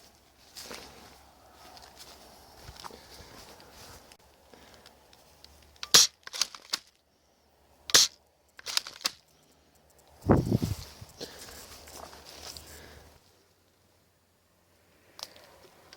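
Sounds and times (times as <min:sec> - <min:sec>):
rustling handling noise: 0:08.6 - 0:13.2.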